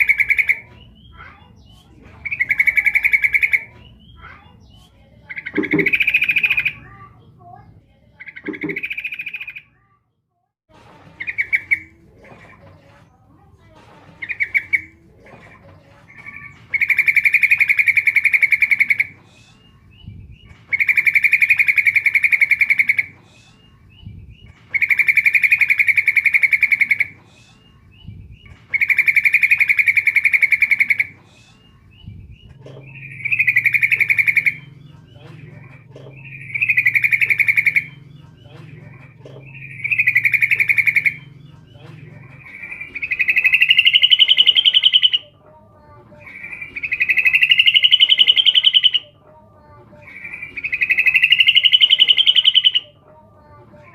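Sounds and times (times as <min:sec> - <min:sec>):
bulbul chattering call: 0:00.0 - 0:07.1, 0:08.2 - 0:09.7, 0:31.9 - 0:45.3, 0:46.2 - 0:49.2, 0:50.0 - 0:53.9.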